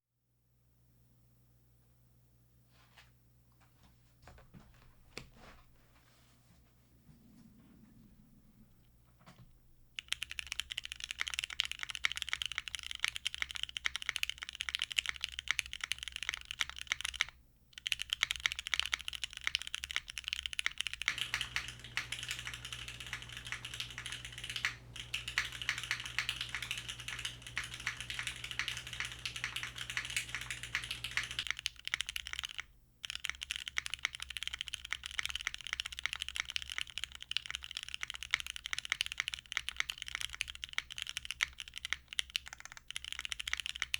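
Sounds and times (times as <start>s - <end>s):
fast typing on mechanical keyboard: 10.0s - 43.9s.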